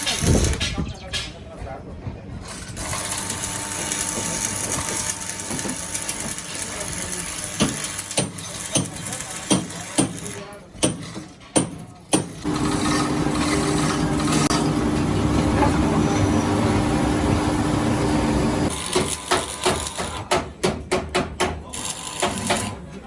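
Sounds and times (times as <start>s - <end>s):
power tool humming: 12.4s - 20.0s.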